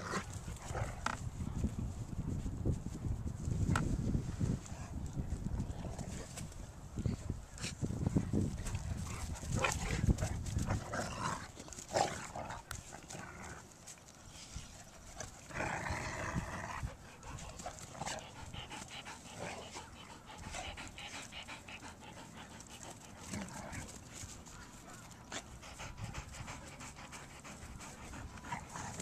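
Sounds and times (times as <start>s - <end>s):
dogs panting: 7.0s - 15.6s, 16.7s - 29.0s.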